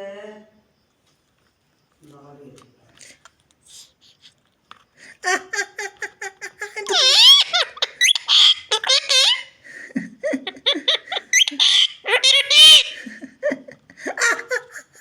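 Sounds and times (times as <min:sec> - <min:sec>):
parrot mimicking laughter: 0:05.9 - 0:09.6, 0:10.2 - 0:13.2.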